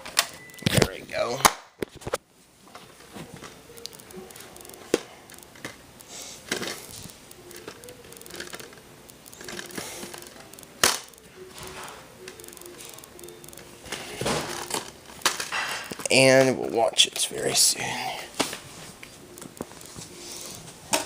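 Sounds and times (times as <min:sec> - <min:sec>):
plastic wrapping crinkling: 0:12.8 - 0:16.4, 0:18.3 - 0:21.0.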